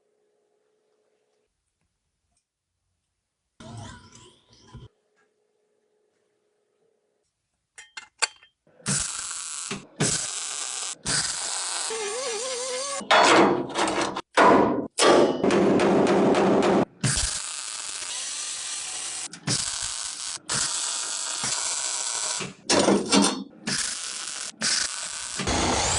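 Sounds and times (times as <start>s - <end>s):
hiss-like tool bursts: 23.7s - 25.9s.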